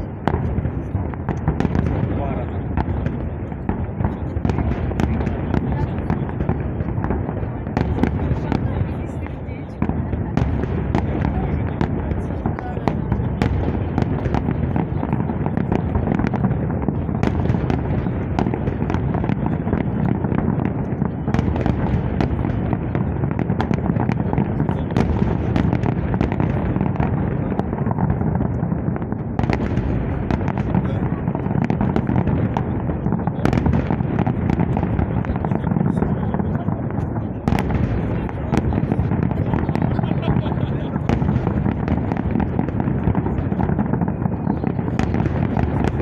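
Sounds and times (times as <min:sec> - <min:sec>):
fireworks bangs and crackles: 0:00.0 - 0:46.0
voices: 0:00.3 - 0:46.0.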